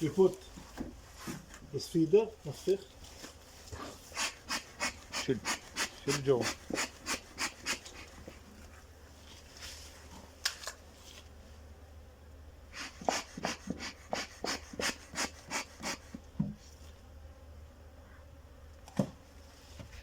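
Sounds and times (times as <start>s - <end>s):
wooden knocks on hive: 16.2s - 16.6s, 18.9s - 19.2s.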